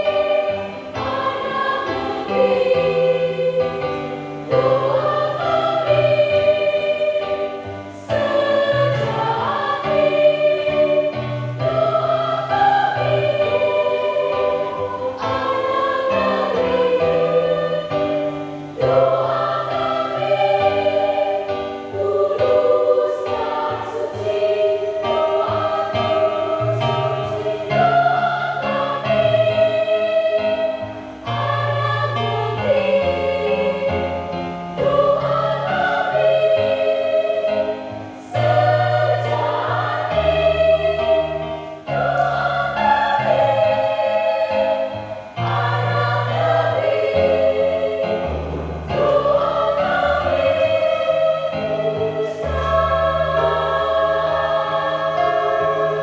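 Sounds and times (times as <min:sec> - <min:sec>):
choir singing in parts: 0:00.0 - 0:56.0.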